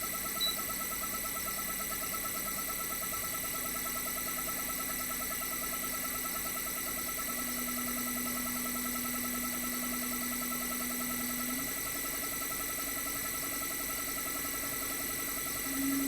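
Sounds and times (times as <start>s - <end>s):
compressor humming and whining: 4.4s - 16.0s.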